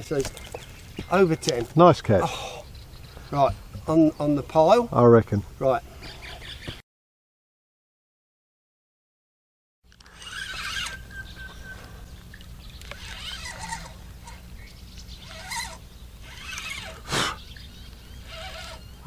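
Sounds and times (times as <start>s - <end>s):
birds chirping and calling: 0.0s - 6.8s, 10.0s - 19.0s
steady low hum: 9.9s - 19.0s.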